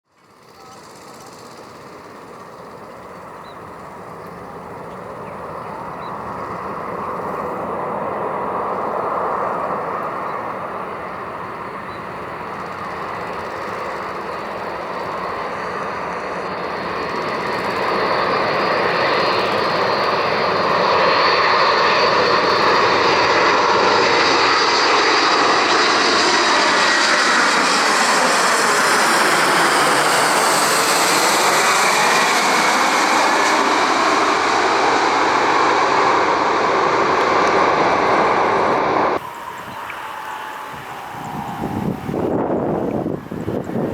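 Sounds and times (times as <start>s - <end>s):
jet aircraft engines: 0.1s - 43.9s.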